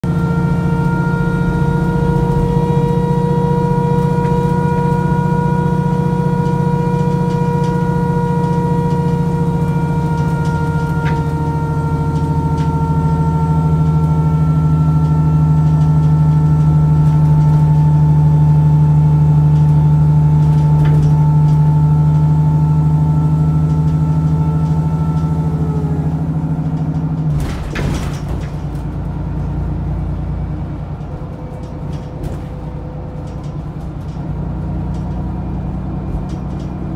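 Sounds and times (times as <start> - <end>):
bus engine rumble: 0.0 - 36.9
steady whine: 0.0 - 36.9
short clatter: 26.6 - 29.6.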